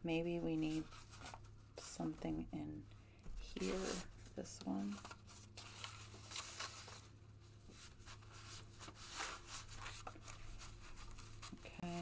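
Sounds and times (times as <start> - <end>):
paper rustling: 0.6 - 1.6, 3.5 - 12.0.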